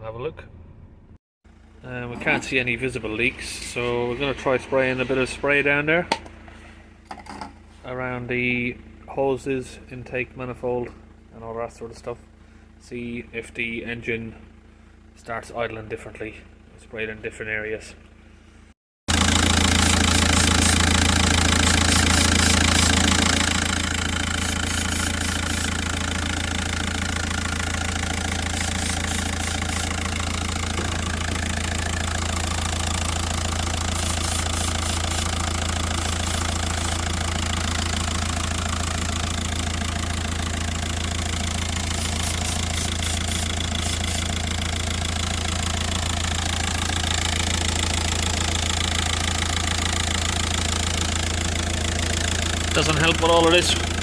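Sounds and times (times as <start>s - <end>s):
diesel engine idling: 1.5s - 7.0s, 14.5s - 15.2s, 18.2s - 54.0s.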